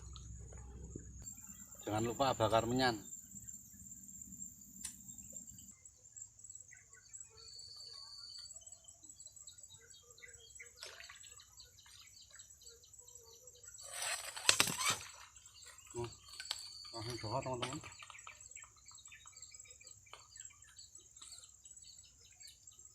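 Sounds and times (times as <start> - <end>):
bird chirps: 0.0 - 22.9
high insect drone: 0.0 - 22.9.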